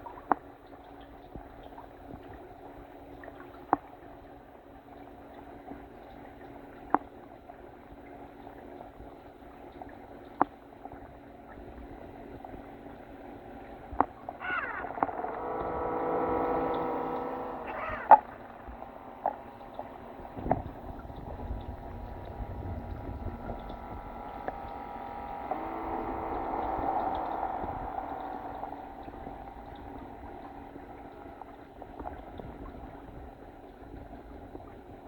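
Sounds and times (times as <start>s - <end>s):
electric propeller motor whine: 12.1s - 35.0s
muffled underwater noise: 13.6s - 35.0s.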